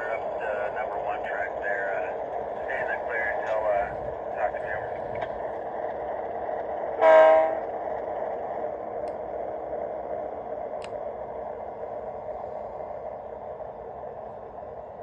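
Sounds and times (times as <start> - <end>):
horn honk: 7.0 - 7.6.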